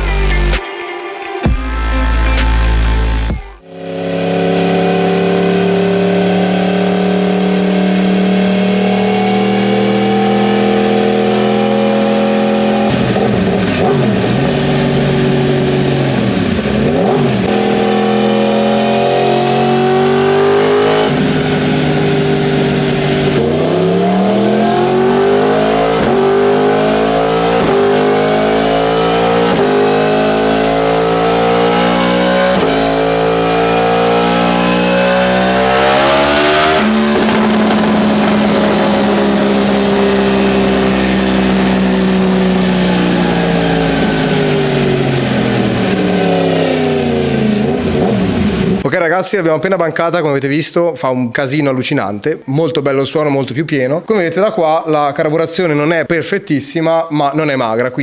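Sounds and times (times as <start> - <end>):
motorcycle engine revving: 3.6 - 48.9.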